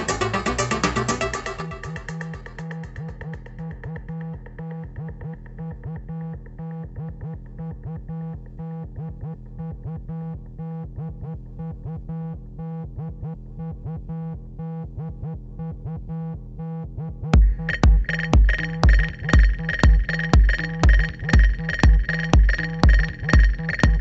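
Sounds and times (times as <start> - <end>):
repeating synth pattern: 0.0 - 8.4, 17.4 - 24.0
held low bass note: 0.0 - 24.0.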